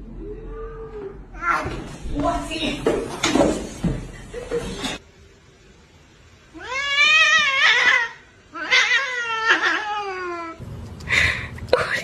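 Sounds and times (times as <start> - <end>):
cat meowing: 6.6 - 10.6.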